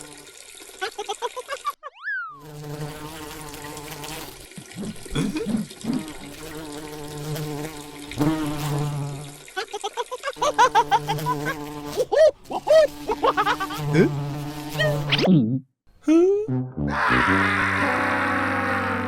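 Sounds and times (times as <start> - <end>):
low insect-like buzz: 2.4 - 4.4, 5.8 - 9.4, 10.4 - 15.1.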